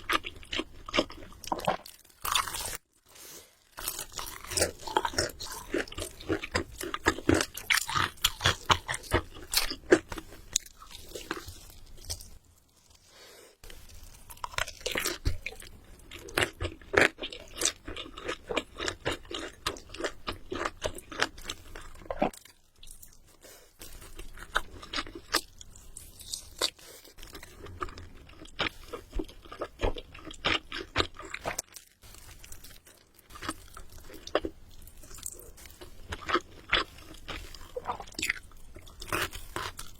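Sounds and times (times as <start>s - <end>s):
crunching fried chicken: 0.0s - 39.9s
wet chewing: 13.6s - 39.9s.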